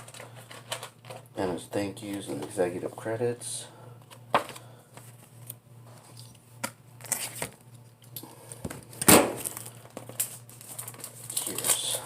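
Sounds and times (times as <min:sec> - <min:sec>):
packaging crinkling tear: 0:09.0 - 0:12.0
packaging rustling: 0:09.4 - 0:12.0.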